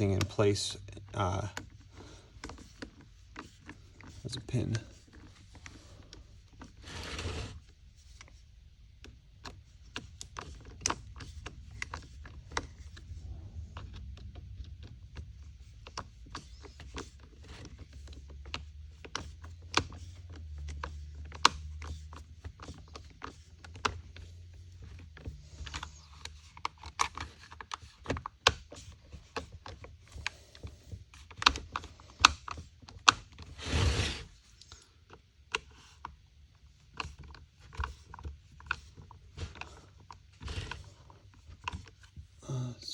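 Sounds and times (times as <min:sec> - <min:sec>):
low steady hum: 0:00.0 - 0:19.5.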